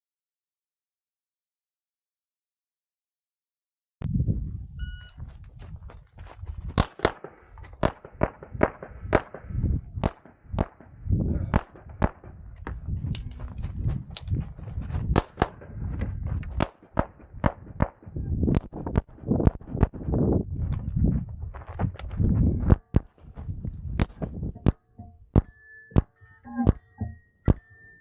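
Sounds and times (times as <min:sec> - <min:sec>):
pistol shots: 0:06.8 - 0:12.7, 0:15.1 - 0:15.7, 0:16.5 - 0:19.1.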